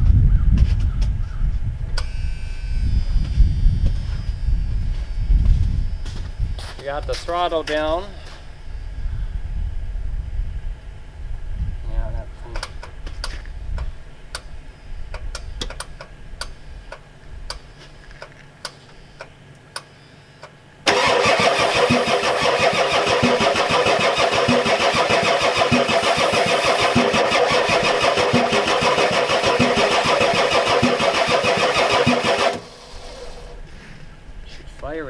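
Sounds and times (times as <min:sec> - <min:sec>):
starter cranking diesel engine: 0:20.9 - 0:33.6.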